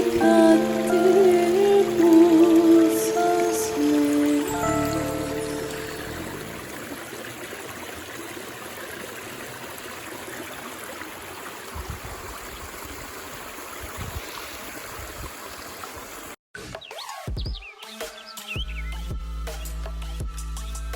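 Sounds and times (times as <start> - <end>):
stream water rushing: 0.0 - 16.4.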